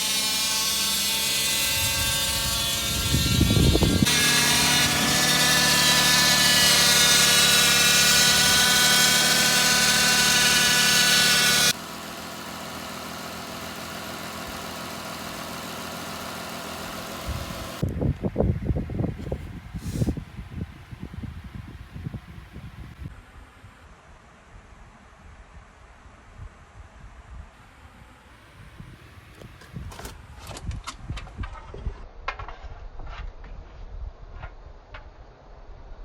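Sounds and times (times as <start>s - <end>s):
car engine harsh whining noise: 1.8s - 17.9s
car engine running: 7.8s - 17.8s.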